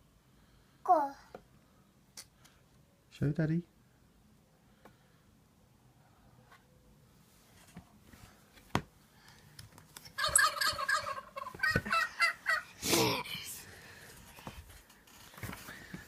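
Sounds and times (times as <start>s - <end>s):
toy turkey gobbling: 10.2s - 12.7s.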